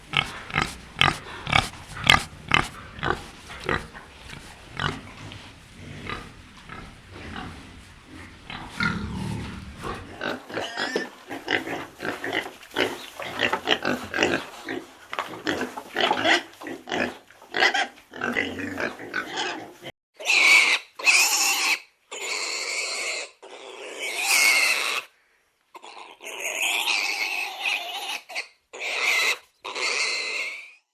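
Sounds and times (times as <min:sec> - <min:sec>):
pig squealing: 0:00.0 - 0:11.0, 0:17.6 - 0:25.1, 0:25.8 - 0:30.8
pigs grunting: 0:00.0 - 0:20.5.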